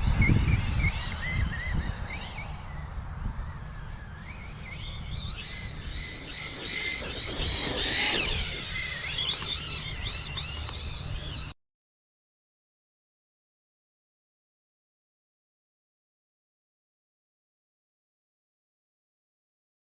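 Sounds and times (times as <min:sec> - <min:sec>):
rc truck motor whining: 0:00.4 - 0:11.6.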